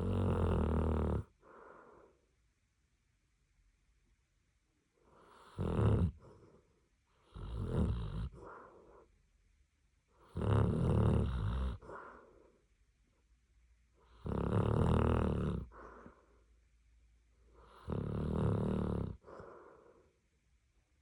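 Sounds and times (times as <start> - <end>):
dog snoring: 0.0 - 2.1, 5.0 - 6.6, 7.2 - 9.0, 10.2 - 12.4, 14.0 - 16.3, 17.5 - 20.0.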